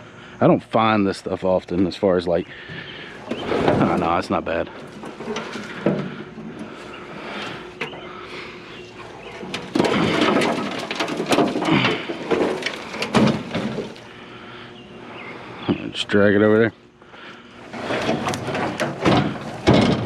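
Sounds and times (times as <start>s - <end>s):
metal scrap clanking: 3.2s - 14.1s, 17.6s - 20.0s.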